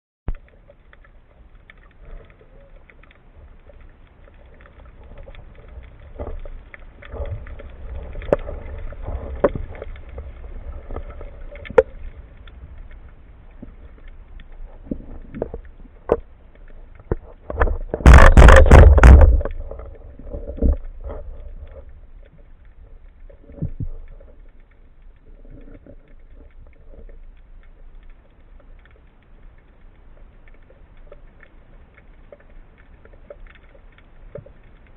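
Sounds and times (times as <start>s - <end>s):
faint underwater rumble: 0.3s - 34.9s
sharp clicks and knocks: 17.0s - 21.9s
loud rough burst: 18.0s - 19.4s.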